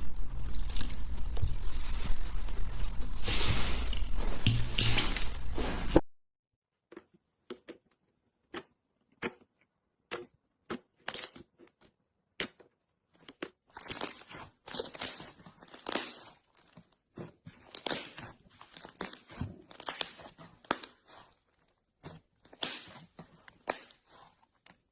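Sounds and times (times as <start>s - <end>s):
sticky slime crackling: 12.3s - 24.9s.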